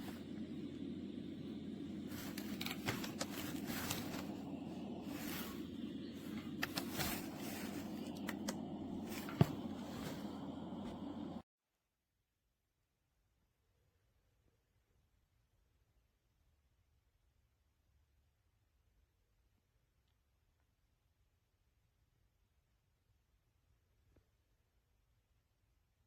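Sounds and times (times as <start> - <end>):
low rushing noise from speaker: 0.0 - 11.4
clicks and crackles: 0.2 - 11.4.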